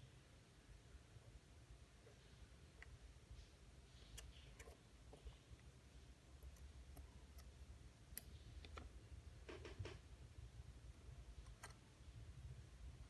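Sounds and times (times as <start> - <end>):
low steady hum: 0.0 - 13.0
small metal tools clicking: 11.4 - 11.8.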